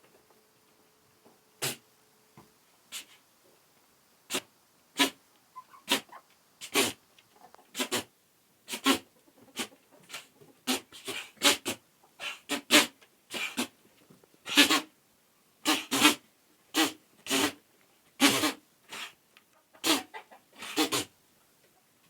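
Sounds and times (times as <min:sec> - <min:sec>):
goats sneezing: 0:01.6 - 0:01.9, 0:02.9 - 0:03.2, 0:04.3 - 0:05.2, 0:05.9 - 0:07.0, 0:07.7 - 0:08.1, 0:08.7 - 0:13.7, 0:14.5 - 0:14.9, 0:15.6 - 0:17.6, 0:18.2 - 0:19.2, 0:19.8 - 0:21.1.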